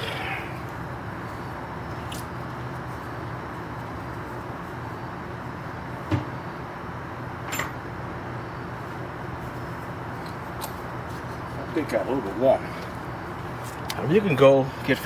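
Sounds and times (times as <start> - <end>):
background hum: 0.0 - 15.0
metal latch clink: 7.5 - 7.8.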